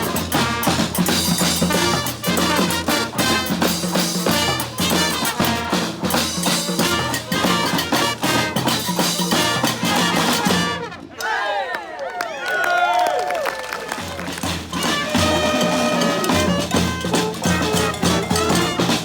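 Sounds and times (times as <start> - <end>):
brass band playing: 0.0 - 11.2, 14.0 - 19.0
crowd cheering: 9.9 - 16.8.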